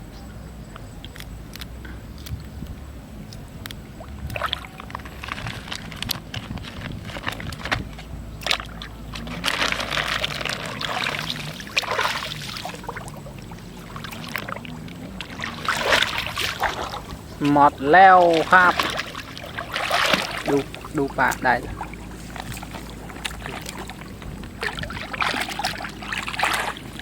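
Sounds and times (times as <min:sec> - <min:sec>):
water splashing and sloshing: 0:00.0 - 0:27.0.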